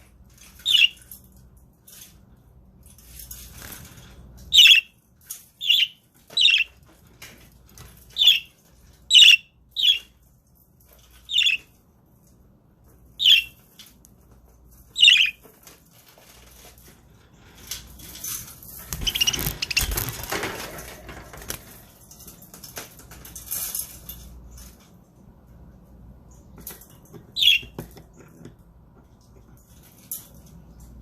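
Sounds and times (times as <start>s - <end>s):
budgerigars flapping wings: 18.8s - 20.7s
budgie chirp: 19.0s - 19.9s.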